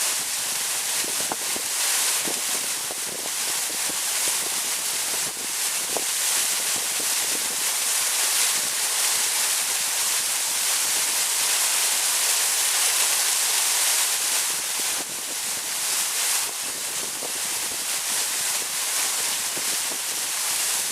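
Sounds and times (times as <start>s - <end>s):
waterfall pounding: 0.0s - 20.9s.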